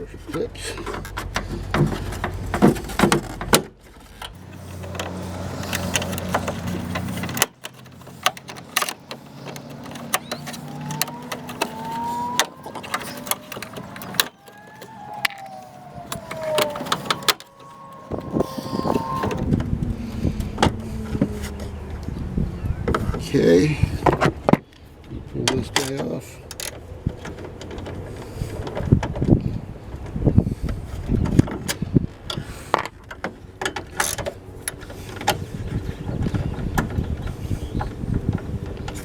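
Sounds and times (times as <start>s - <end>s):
plastic clips clicking and scraping: 0.9s - 19.5s
squeaky tones: 9.6s - 22.9s.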